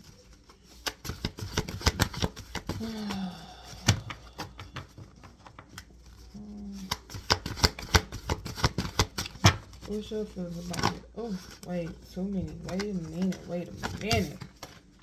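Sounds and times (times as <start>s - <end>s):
cards being shuffled: 0.0s - 15.0s
person humming low: 2.8s - 4.7s.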